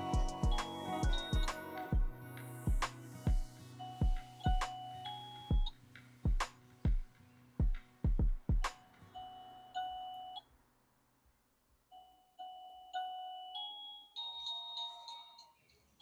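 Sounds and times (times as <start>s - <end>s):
electronic door chime melody: 0.0s - 5.7s, 9.2s - 10.4s, 12.0s - 16.0s.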